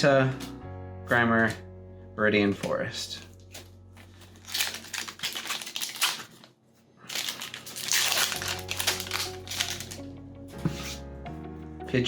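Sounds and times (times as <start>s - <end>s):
foil wrapper crinkling: 3.2s - 10.1s.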